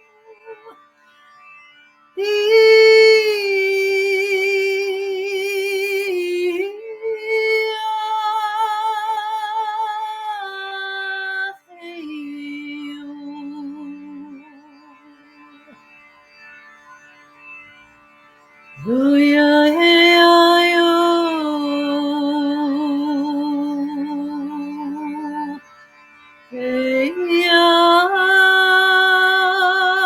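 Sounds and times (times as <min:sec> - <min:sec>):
woman singing with vibrato: 0:02.2 - 0:15.4, 0:18.8 - 0:25.6, 0:26.5 - 0:30.0.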